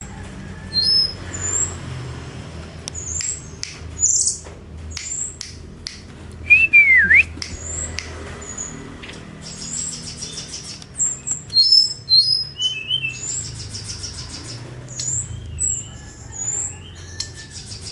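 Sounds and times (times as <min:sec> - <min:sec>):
songbird singing: 0:00.6 - 0:01.9, 0:02.7 - 0:17.9
swooping whistle: 0:06.5 - 0:07.4.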